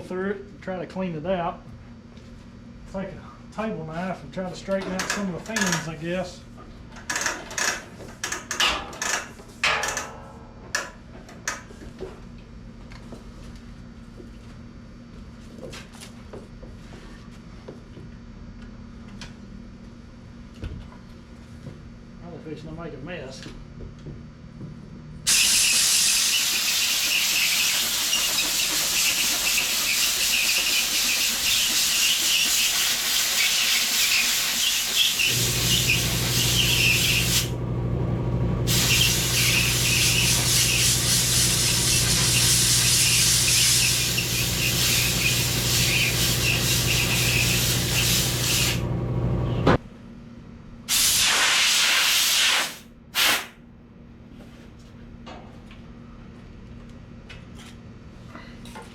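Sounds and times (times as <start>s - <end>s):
compressed air hissing from blowgun: 25.3s - 37.5s, 38.7s - 48.8s, 50.9s - 53.5s.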